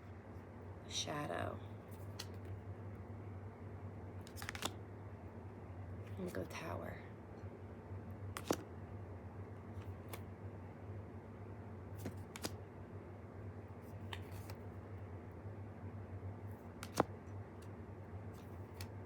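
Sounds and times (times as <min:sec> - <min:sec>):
steady low hum: 0:00.0 - 0:19.0
cards clicking and tapping: 0:02.0 - 0:02.6, 0:04.2 - 0:04.8, 0:08.4 - 0:08.6, 0:12.0 - 0:12.6, 0:14.0 - 0:14.6, 0:16.8 - 0:17.7, 0:18.4 - 0:19.0.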